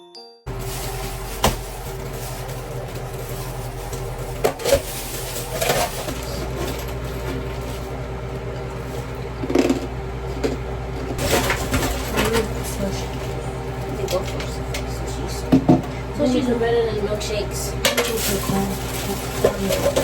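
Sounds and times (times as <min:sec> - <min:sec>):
low mechanical hum: 0:00.5 - 0:20.0.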